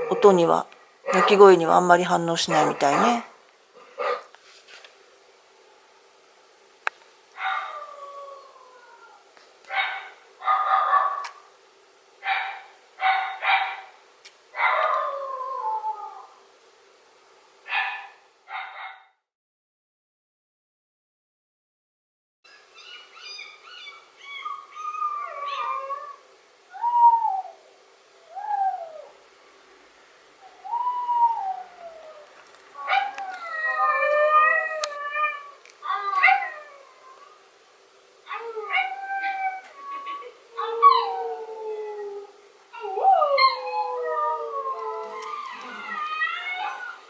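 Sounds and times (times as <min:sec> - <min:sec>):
dog howling and yelping: 0:02.5 - 0:03.3, 0:07.4 - 0:11.3, 0:14.6 - 0:16.4, 0:22.8 - 0:27.6, 0:28.2 - 0:29.2, 0:30.5 - 0:37.4, 0:38.3 - 0:47.0.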